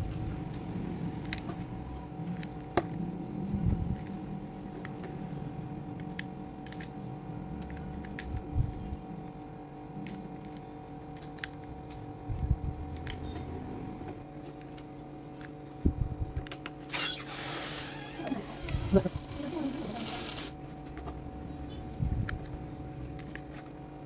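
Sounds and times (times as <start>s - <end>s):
steady low hum: 0.0s - 24.0s.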